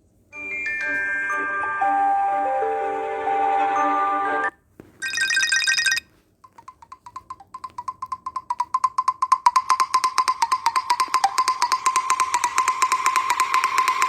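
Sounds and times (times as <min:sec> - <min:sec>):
bright ringtone: 0:00.4 - 0:02.7, 0:05.0 - 0:06.0
ringtone of wood-block ticks: 0:05.0 - 0:14.0.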